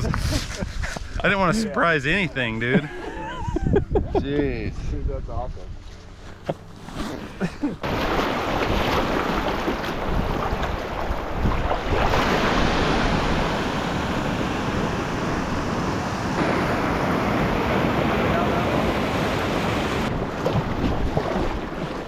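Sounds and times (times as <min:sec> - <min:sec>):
wind rushing over microphone: 0:00.0 - 0:01.5, 0:03.3 - 0:05.8, 0:07.8 - 0:21.5.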